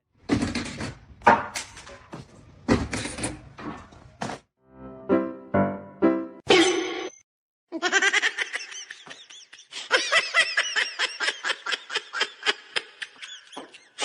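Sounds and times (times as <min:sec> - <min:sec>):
person laughing: 0:07.8 - 0:14.0.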